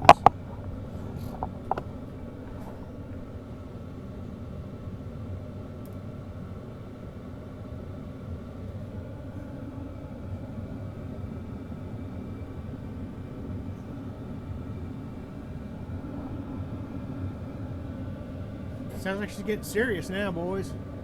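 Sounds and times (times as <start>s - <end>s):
air heater running: 0.0s - 21.0s.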